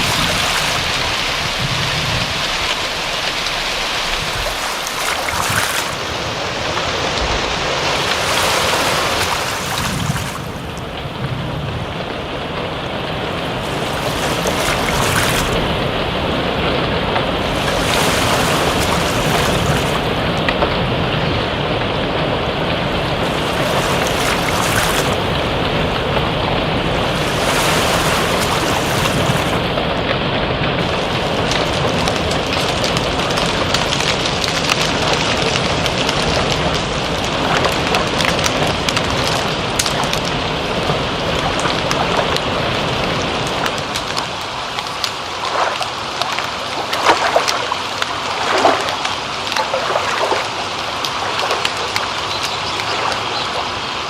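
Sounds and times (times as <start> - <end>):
running water splashing: 0.0 - 20.8, 22.7 - 29.9, 41.5 - 54.0
rain falling: 0.0 - 54.0.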